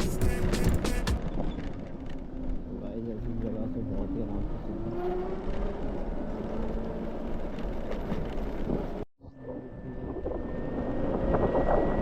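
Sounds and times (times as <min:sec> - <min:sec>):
road noise: 0:00.0 - 0:09.1
wind rushing over microphone: 0:08.6 - 0:12.0.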